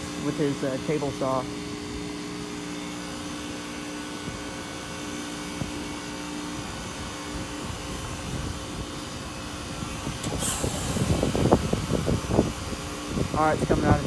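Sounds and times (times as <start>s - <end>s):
heat pump unit humming: 0.0s - 14.0s.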